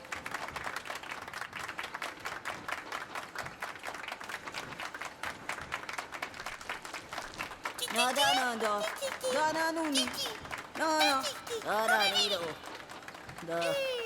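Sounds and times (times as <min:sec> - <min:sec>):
hands clapping: 0:00.0 - 0:14.0.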